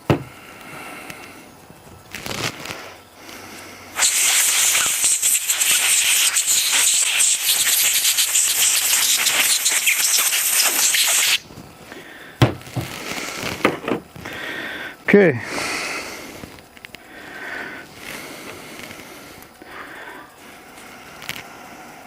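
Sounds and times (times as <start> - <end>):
pressurised jet hissing: 3.9 - 11.4.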